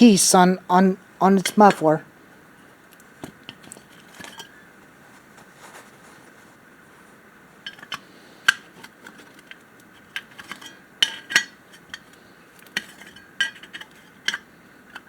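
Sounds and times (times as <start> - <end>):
metal parts clinking: 7.6 - 15.0.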